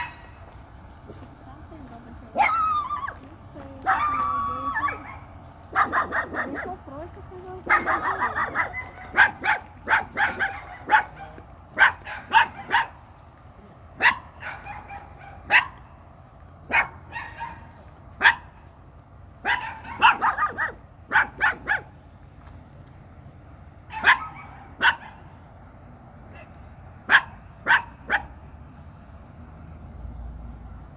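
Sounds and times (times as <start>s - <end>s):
dog barking: 3.8s - 6.8s, 7.6s - 13.0s, 14.0s - 15.8s, 16.7s - 18.5s, 19.4s - 21.9s, 23.9s - 25.2s, 26.3s - 28.4s.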